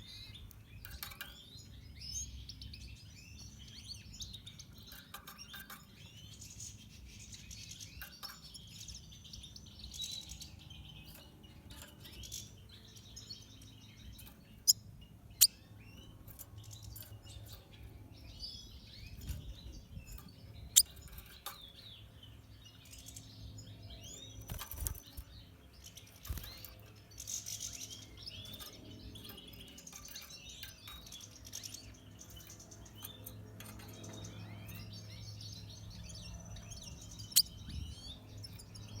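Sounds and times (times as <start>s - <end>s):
bird twittering: 15.4s - 15.7s, 37.3s - 38.2s.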